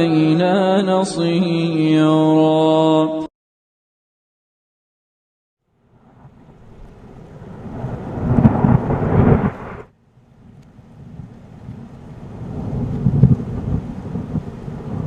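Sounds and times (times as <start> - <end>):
thunder rumbling: 5.9 - 15.0.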